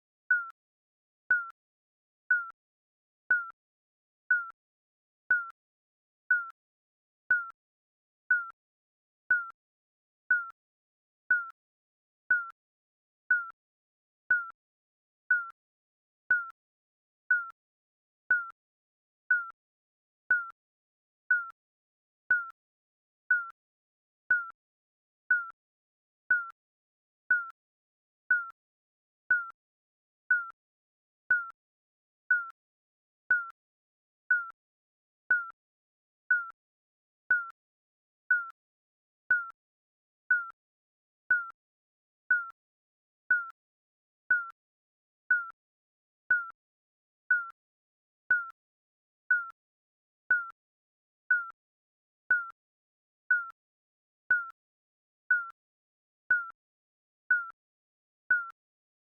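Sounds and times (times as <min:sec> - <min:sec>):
short digital timer beep: 0:00.3 - 0:00.6, 0:01.3 - 0:01.6, 0:02.3 - 0:02.6, 0:03.3 - 0:03.6, 0:04.3 - 0:04.6, 0:05.3 - 0:05.6, 0:06.3 - 0:06.6, 0:07.3 - 0:07.6, 0:08.3 - 0:08.6, 0:09.3 - 0:09.6, 0:10.3 - 0:10.6, 0:11.3 - 0:11.6, 0:12.3 - 0:12.6, 0:13.3 - 0:13.6, 0:14.3 - 0:14.6, 0:15.3 - 0:15.6, 0:16.3 - 0:16.6, 0:17.3 - 0:17.6, 0:18.3 - 0:18.6, 0:19.3 - 0:19.6, 0:20.3 - 0:20.6, 0:21.3 - 0:21.6, 0:22.3 - 0:22.6, 0:23.3 - 0:23.6, 0:24.3 - 0:24.6, 0:25.3 - 0:25.6, 0:26.3 - 0:26.6, 0:27.3 - 0:27.6, 0:28.3 - 0:28.6, 0:29.3 - 0:29.6, 0:30.3 - 0:30.6, 0:31.3 - 0:31.6, 0:32.3 - 0:32.6, 0:33.3 - 0:33.6, 0:34.3 - 0:34.6, 0:35.3 - 0:35.6, 0:36.3 - 0:36.6, 0:37.3 - 0:37.6, 0:38.3 - 0:38.6, 0:39.3 - 0:39.6, 0:40.3 - 0:40.6, 0:41.3 - 0:41.6, 0:42.3 - 0:42.6, 0:43.3 - 0:43.6, 0:44.3 - 0:44.6, 0:45.3 - 0:45.6, 0:46.3 - 0:46.6, 0:47.3 - 0:47.6, 0:48.3 - 0:48.6, 0:49.3 - 0:49.6, 0:50.3 - 0:50.6, 0:51.3 - 0:51.6, 0:52.3 - 0:52.6, 0:53.3 - 0:53.6, 0:54.3 - 0:54.6, 0:55.3 - 0:55.6, 0:56.3 - 0:56.6, 0:57.3 - 0:57.6, 0:58.3 - 0:58.6.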